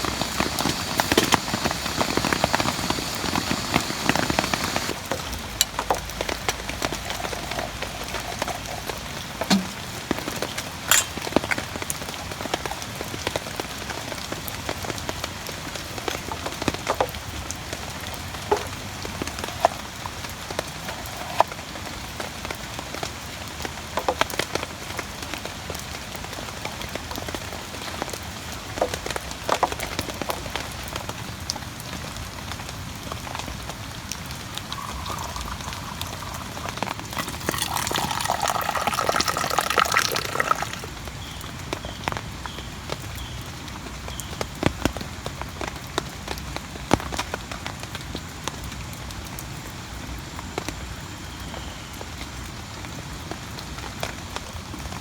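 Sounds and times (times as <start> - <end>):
louder sound with steady tones: 0.0 - 5.0
raindrops tapping close by: 0.0 - 49.6
steady rain: 0.0 - 55.0.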